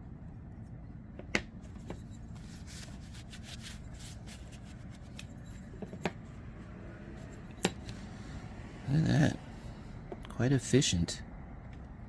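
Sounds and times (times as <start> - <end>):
parts rubbing and rustling: 0.5 - 8.1.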